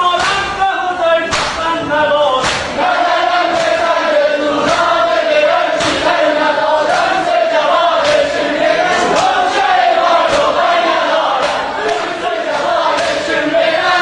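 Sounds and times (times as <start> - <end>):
men chanting in unison: 0.0 - 14.0
hands slapping on chests: 1.3 - 1.6, 2.4 - 2.8, 3.5 - 3.9, 4.6 - 5.0, 5.8 - 6.2, 8.0 - 8.4, 9.1 - 9.6, 10.2 - 13.3.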